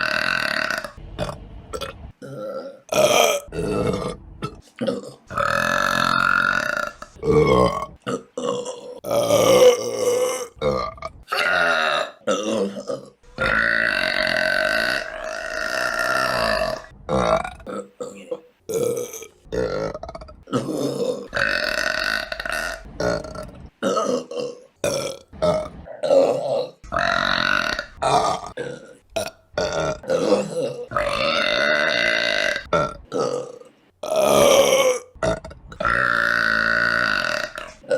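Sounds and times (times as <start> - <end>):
woman burping: 27.3 - 37.9.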